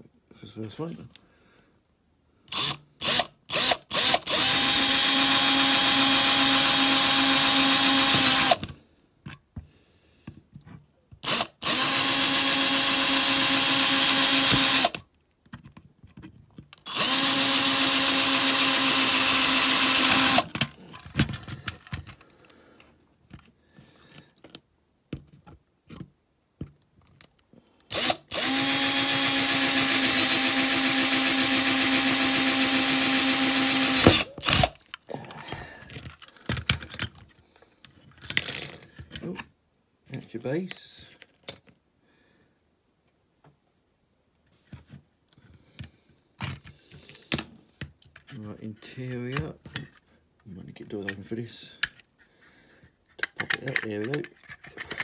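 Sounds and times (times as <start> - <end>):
electric drill whirring: 2.5 - 8.7, 11.2 - 15.0, 16.9 - 20.6, 27.9 - 34.8.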